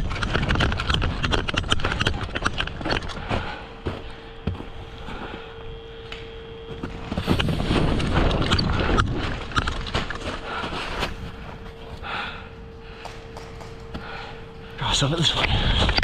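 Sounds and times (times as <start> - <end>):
gear rustling and rattling: 0.0 - 4.0, 6.9 - 12.0
footsteps: 2.0 - 12.0.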